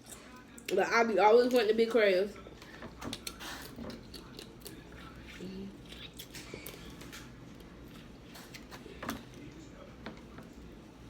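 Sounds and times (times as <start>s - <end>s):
chewing close to mic: 3.0s - 9.6s
crab shells cracking: 3.1s - 4.9s.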